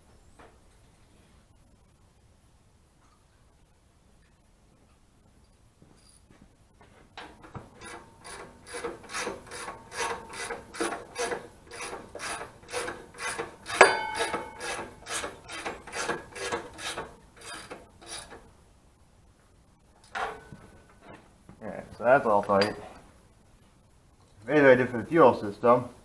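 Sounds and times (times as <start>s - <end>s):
ratchet clicking: 7.8s - 18.4s
ringing metal clink: 13.7s - 15.0s, 22.4s - 23.0s.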